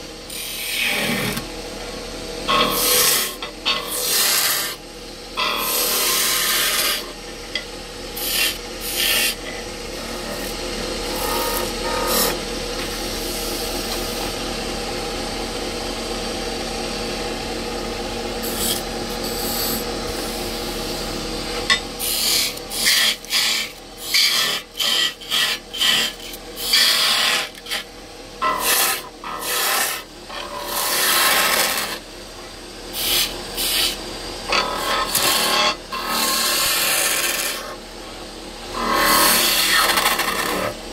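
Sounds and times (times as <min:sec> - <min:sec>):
wood lathe running: 0:00.0 - 0:14.0, 0:18.4 - 0:32.1, 0:32.9 - 0:37.8, 0:38.7 - 0:40.9
turning tool scraping wood: 0:02.5 - 0:04.8, 0:05.4 - 0:07.2, 0:08.2 - 0:12.9, 0:21.5 - 0:32.0, 0:32.9 - 0:37.8, 0:38.8 - 0:40.8.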